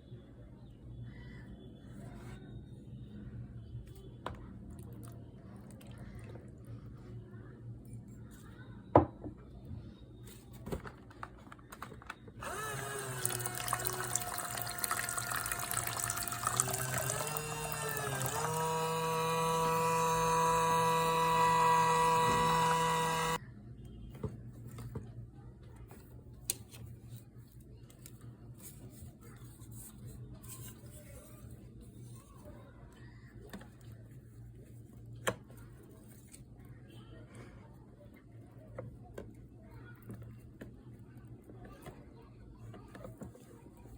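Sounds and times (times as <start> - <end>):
water running or spraying: 12.7 - 19.0
whining tone: 16.2 - 23.4.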